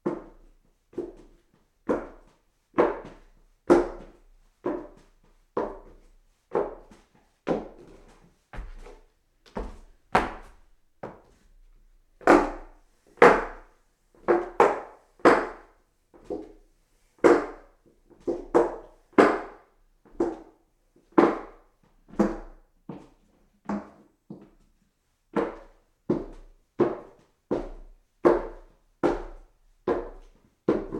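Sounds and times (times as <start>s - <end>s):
footsteps on wooden stairs: 7.5s - 11.4s.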